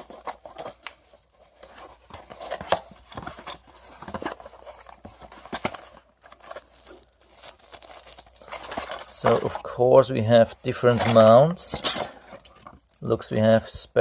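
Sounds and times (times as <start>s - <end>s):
packaging rustling: 0.0s - 13.2s
plastic accessories clicking and knocking: 10.8s - 13.1s.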